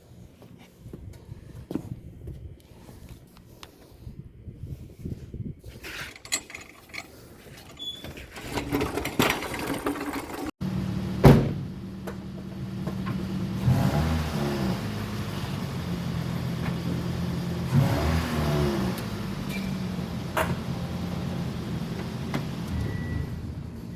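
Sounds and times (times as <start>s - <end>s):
car engine idling and revving: 10.6s - 23.9s.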